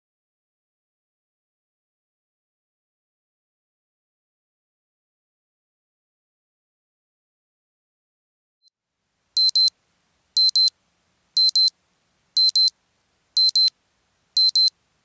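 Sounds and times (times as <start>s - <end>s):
timer double beeps: 9.4s - 9.7s, 10.4s - 10.7s, 11.4s - 11.7s, 12.4s - 12.7s, 13.4s - 13.7s, 14.4s - 14.7s.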